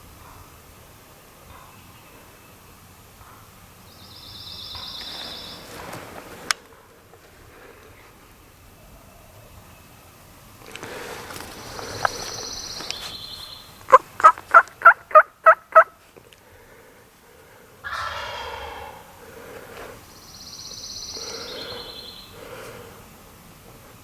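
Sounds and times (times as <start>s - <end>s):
turkey gobbling: 13.8s - 16.0s, 17.8s - 19.5s
loud turkey yelps: 13.9s - 16.0s, 17.8s - 19.2s.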